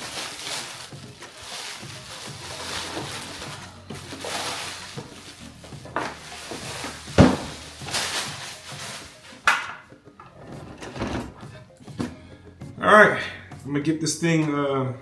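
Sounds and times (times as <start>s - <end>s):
packaging rustling: 0.0s - 9.4s
box thumps: 2.0s - 9.8s.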